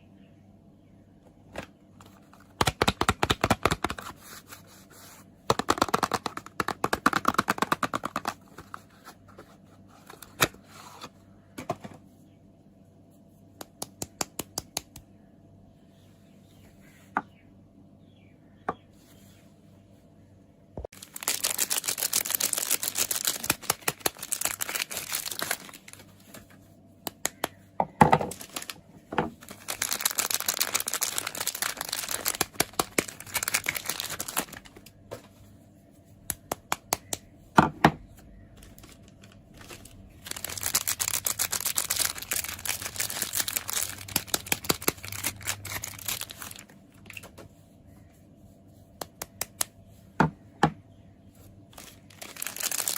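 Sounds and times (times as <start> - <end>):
packaging crinkling and tearing: 5.5 - 9.0, 20.9 - 26.5, 28.2 - 28.8, 29.4 - 34.9, 38.6 - 47.3, 51.7 - 52.9.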